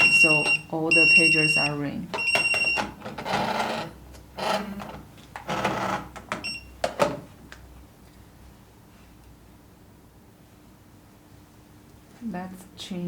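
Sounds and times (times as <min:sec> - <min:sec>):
high electronic pager beep: 0:00.0 - 0:02.9, 0:06.4 - 0:06.7.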